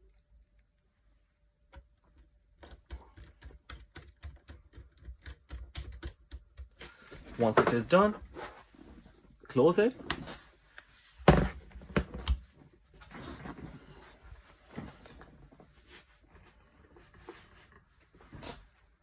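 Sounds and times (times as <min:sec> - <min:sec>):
faint handling sounds: 0:06.7 - 0:19.0.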